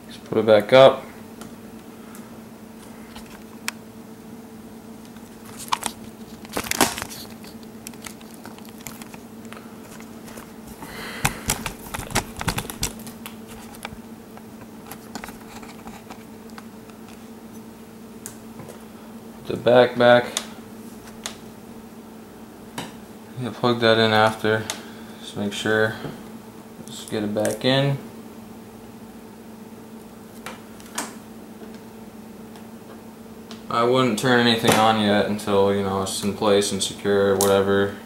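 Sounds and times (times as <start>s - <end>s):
steady low hum: 0.0s - 38.0s
plastic laptop parts clicking: 5.5s - 10.5s, 11.2s - 14.0s.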